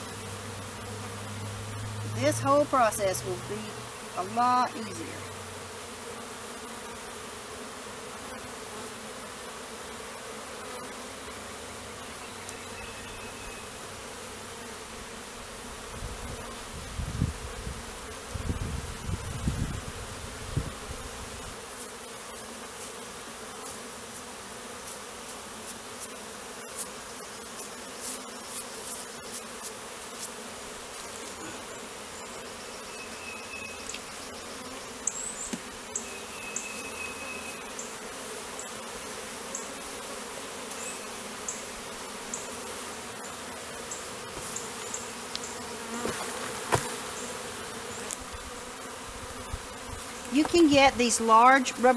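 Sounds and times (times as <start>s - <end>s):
bee swarm buzzing: 0.0s - 51.9s.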